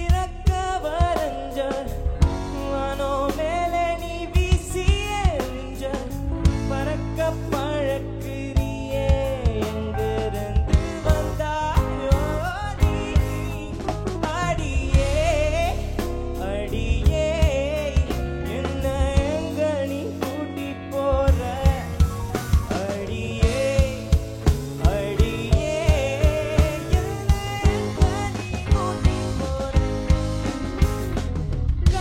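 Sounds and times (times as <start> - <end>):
person singing: 0.0 - 31.0
bass: 0.0 - 32.0
drum kit beat: 0.0 - 32.0.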